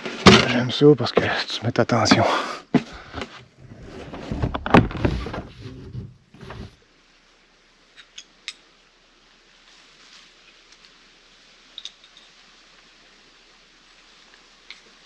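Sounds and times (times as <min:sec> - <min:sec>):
rope handling rustling and knocks: 0:02.8 - 0:06.8.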